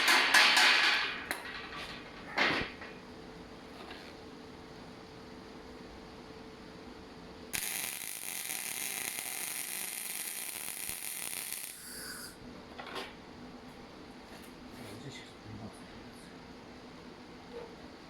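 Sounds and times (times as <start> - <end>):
welding arc hissing: 7.5 - 12.4.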